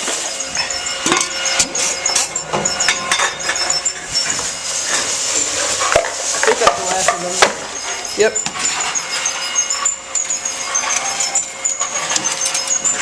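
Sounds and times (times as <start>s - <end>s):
empty cans clanking: 4.2s - 8.8s.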